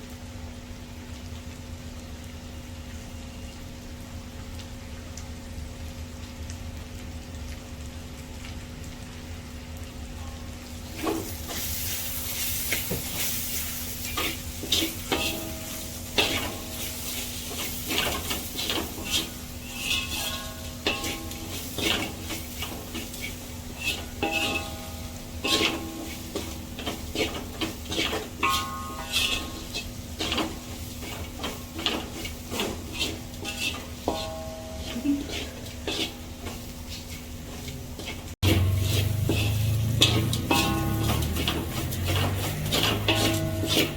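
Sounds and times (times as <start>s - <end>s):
vegetables sizzling in a pan: 0.0s - 43.9s
spatula scraping a pan: 11.0s - 43.9s.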